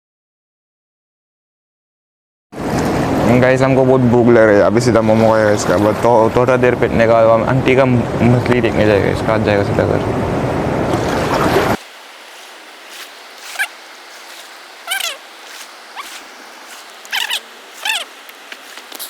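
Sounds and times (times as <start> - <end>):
faint steady background noise: 11.8 - 19.0
animal chirping calls: 12.3 - 19.0.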